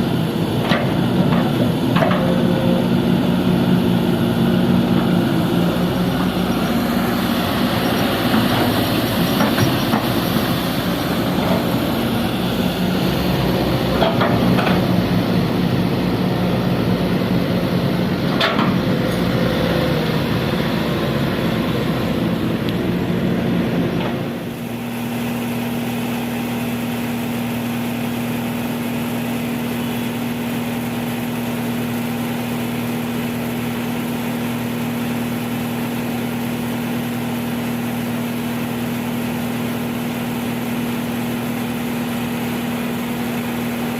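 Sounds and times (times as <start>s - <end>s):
excavator diesel engine: 0.0s - 43.9s.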